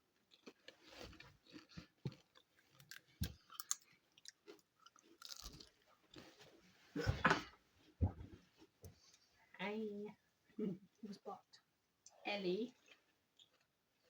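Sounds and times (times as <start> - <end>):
person chewing popcorn: 0.0 - 6.6, 12.8 - 14.0.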